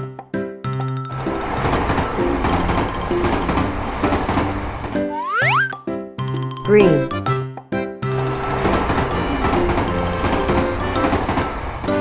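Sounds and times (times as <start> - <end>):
train wheels clattering: 1.1 - 5.1, 8.2 - 12.0
train passing: 1.1 - 5.2, 8.3 - 12.0
background music: 1.8 - 12.0.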